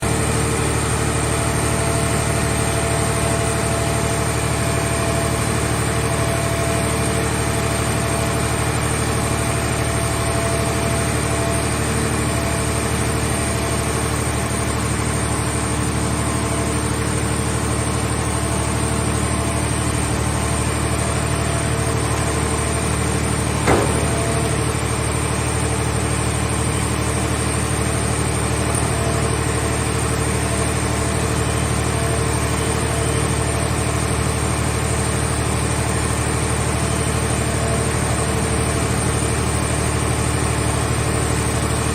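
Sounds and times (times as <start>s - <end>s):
engine hum: 0.0s - 41.9s
sharp knock: 23.6s - 24.7s.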